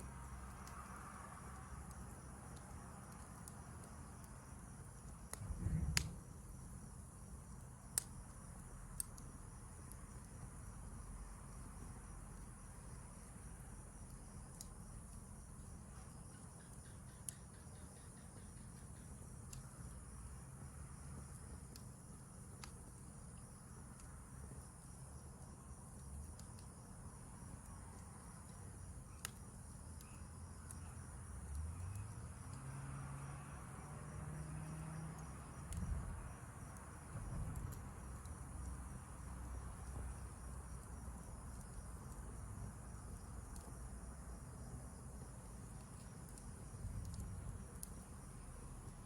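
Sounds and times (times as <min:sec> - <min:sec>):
campfire crackles: 0:00.0 - 0:49.0
crickets and night insects: 0:00.0 - 0:49.0
low rumble: 0:05.4 - 0:06.3.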